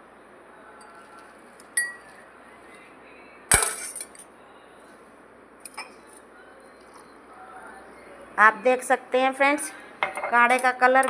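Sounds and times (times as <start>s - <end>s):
utensils clinking against glass: 0.8s - 2.2s, 3.5s - 4.2s, 10.5s - 10.8s.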